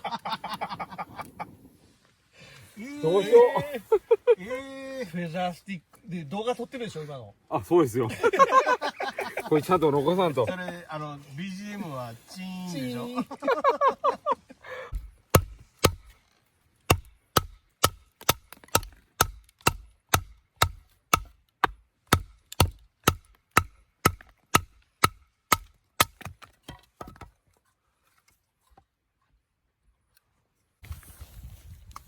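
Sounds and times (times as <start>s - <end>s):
blade chopping wood: 14.9s - 16.2s, 16.9s - 27.3s.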